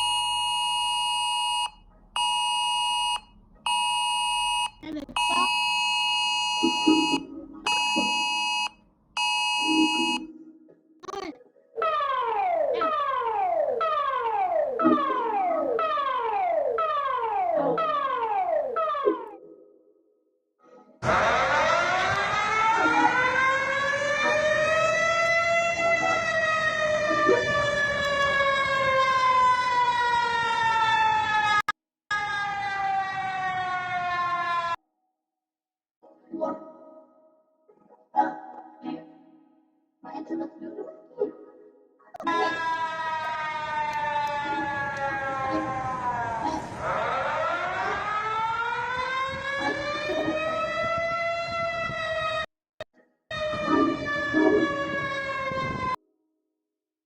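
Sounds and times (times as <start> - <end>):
electronic two-tone alarm beeps: 0.0 - 11.0
siren tone gliding downward: 0.0 - 11.2, 11.8 - 19.6, 21.0 - 31.6, 32.2 - 34.8, 42.2 - 52.5, 53.3 - 56.0.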